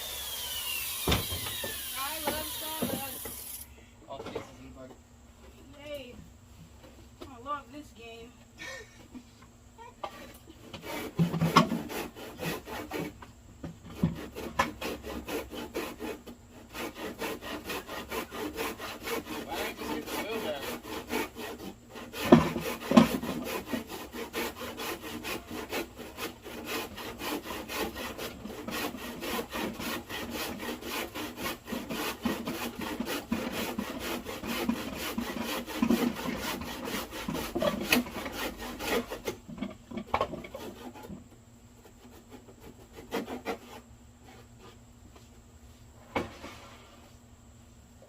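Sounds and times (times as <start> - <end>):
handsaw cutting wood: 0.0 - 3.6, 10.1 - 13.2, 13.8 - 44.4.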